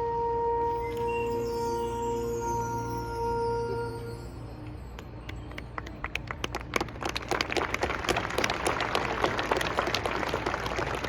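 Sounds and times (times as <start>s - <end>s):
crowd applause: 5.8s - 11.0s.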